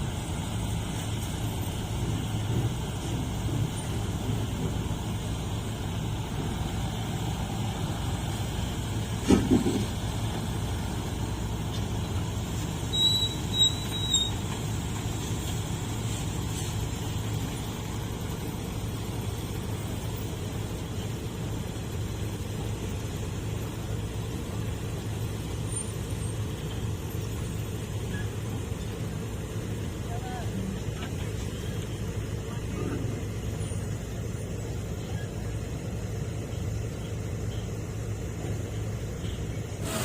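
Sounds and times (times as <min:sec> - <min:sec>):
road vehicles rumbling: 0:00.0 - 0:40.0
high-pitched squeaks: 0:12.8 - 0:14.6.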